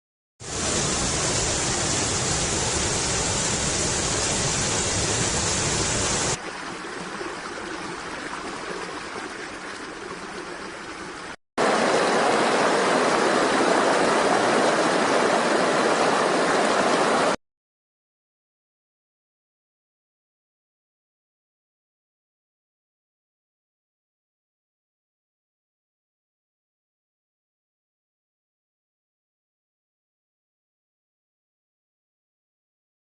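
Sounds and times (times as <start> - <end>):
rushing water: 0.4 - 17.4.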